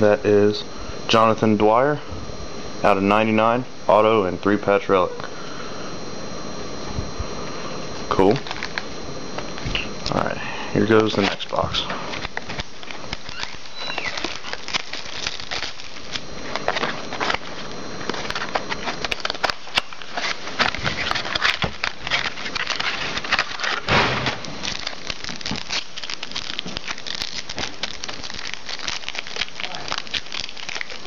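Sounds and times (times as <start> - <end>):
packaging crinkling and rustling: 8.2 - 10.2, 10.8 - 31.0.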